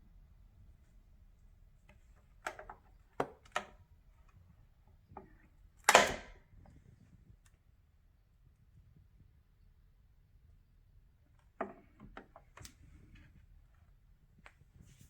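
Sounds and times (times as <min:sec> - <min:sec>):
typewriter clicks: 0:05.9 - 0:06.3.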